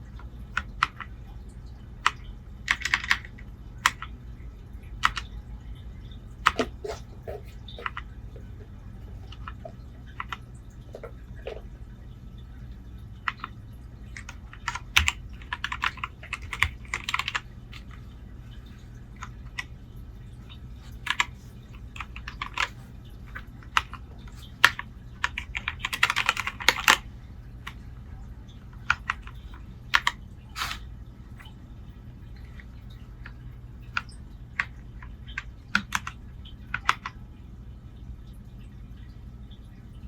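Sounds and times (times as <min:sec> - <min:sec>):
mechanical keyboard key clicks: 0:23.7 - 0:27.0.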